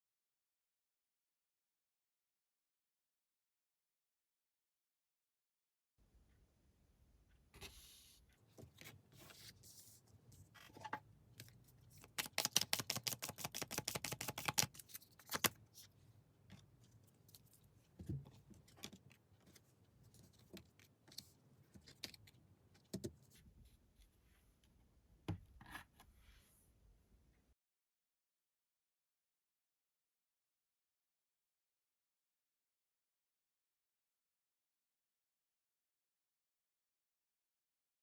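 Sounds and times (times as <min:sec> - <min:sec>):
cards shuffling: 0:10.6 - 0:15.6
rapid card flicks: 0:12.1 - 0:15.5.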